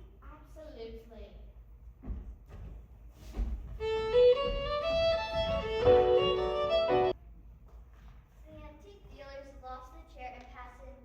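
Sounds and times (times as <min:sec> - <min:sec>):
violin playing: 0:03.8 - 0:07.2.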